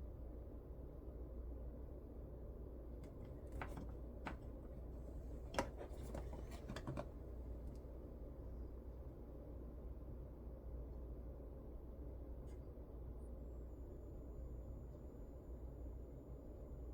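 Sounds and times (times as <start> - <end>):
faint low hum: 0.0 - 16.9
light clicks and taps: 5.5 - 7.1.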